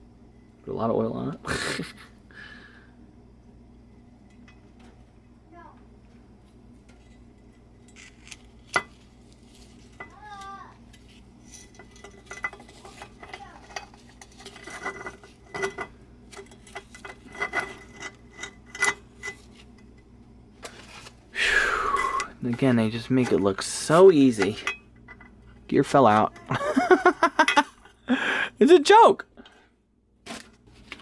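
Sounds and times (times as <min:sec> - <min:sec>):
small steel parts clinking: 0:07.8 - 0:19.6.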